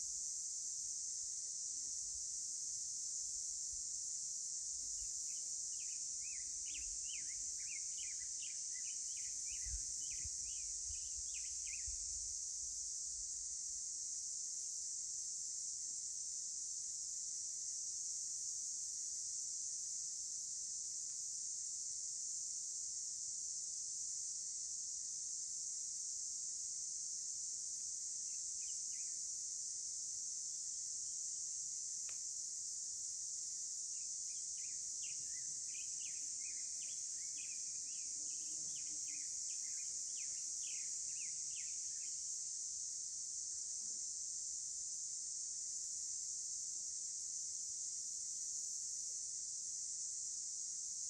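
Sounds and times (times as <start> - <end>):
insects chirping: 0.1 - 13.8, 27.7 - 46.2.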